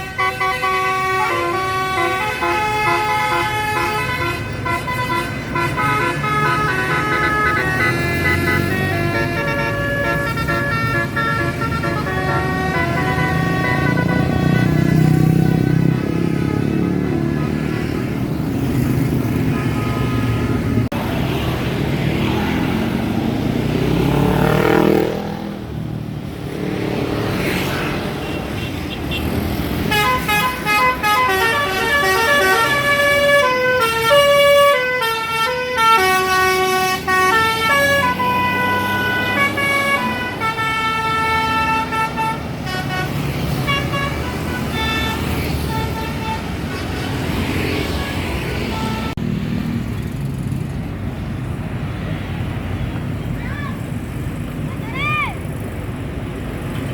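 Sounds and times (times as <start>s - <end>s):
musical bus horn: 0.0s - 18.0s, 28.3s - 49.2s
bus and traffic engine noise: 0.0s - 56.9s.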